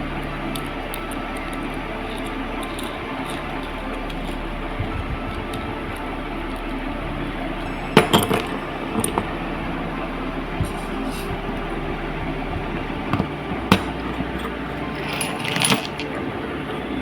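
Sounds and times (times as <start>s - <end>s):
background noise: 0.0s - 17.0s
small metal parts clinking: 0.5s - 4.4s, 7.6s - 9.3s, 12.7s - 16.3s.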